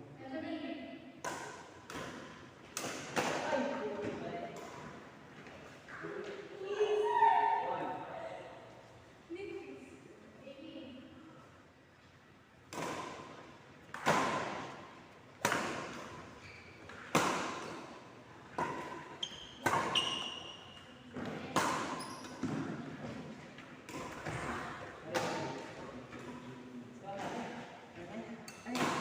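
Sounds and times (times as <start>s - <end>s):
sneaker squeaks: 16.3s - 17.2s, 18.8s - 22.8s.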